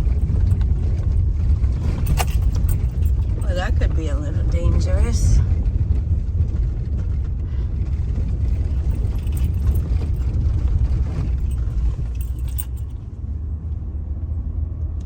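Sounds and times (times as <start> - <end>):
light clicking and rattling: 0.0 - 3.7, 8.0 - 13.1
car driving rumble inside cabin: 0.0 - 15.0.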